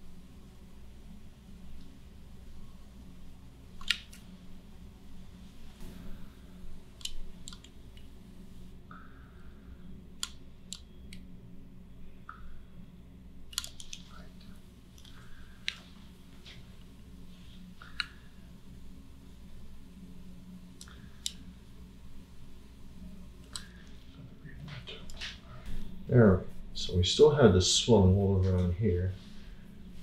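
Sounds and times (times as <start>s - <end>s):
steady low hum: 0.0s - 30.0s
small sharp clicks: 3.8s - 4.3s, 7.0s - 8.1s, 10.2s - 11.3s, 13.5s - 14.1s, 20.8s - 21.4s, 23.4s - 23.8s.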